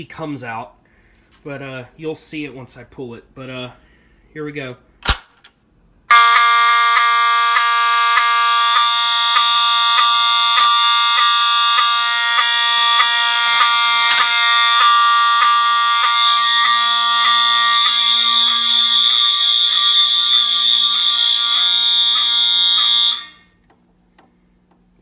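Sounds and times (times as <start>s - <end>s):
fire alarm horns blaring: 6.1s - 23.6s.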